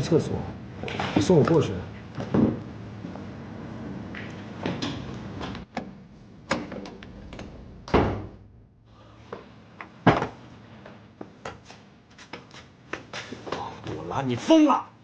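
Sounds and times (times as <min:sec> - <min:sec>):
door banging and thudding: 0:05.8 - 0:08.9.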